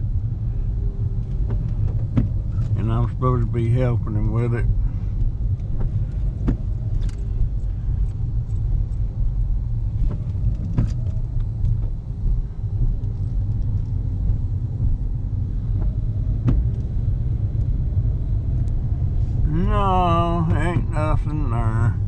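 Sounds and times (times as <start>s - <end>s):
car engine and road rumble: 0.0s - 22.0s
light clicks and rattles: 5.1s - 15.0s.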